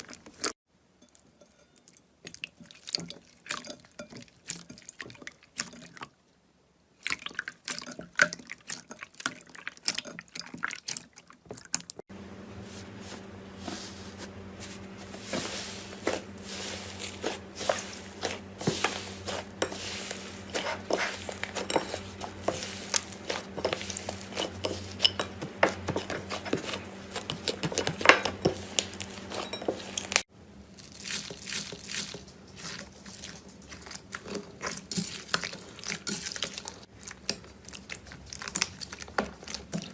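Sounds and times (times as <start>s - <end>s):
low steady hum: 12.1s - 30.8s.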